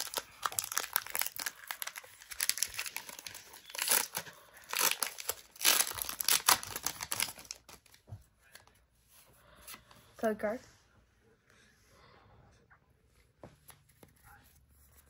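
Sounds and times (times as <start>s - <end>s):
foil wrapper tearing and crinkling: 0.0s - 8.0s.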